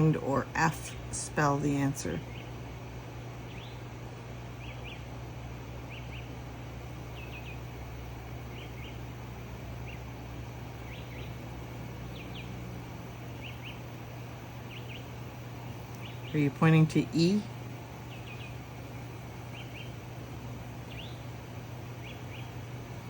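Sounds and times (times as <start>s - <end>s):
low hum and hiss: 0.0s - 23.0s
bird chirping: 3.4s - 3.9s, 4.6s - 5.1s, 5.8s - 6.4s, 7.1s - 7.8s, 8.4s - 9.1s, 9.7s - 23.0s.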